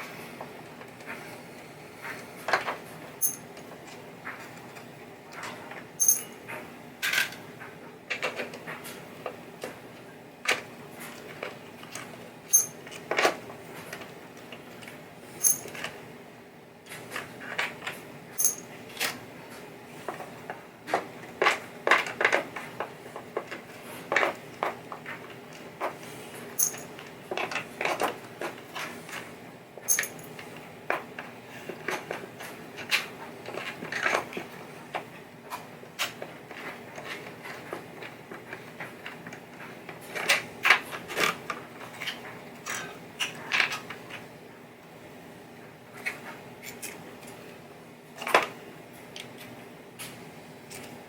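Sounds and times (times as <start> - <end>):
faint steady hum: 0.0 - 51.0
screws and small parts clinking: 3.2 - 3.5, 6.0 - 6.4, 12.5 - 13.0, 15.4 - 15.9, 18.4 - 18.7, 26.6 - 26.9, 29.9 - 30.4.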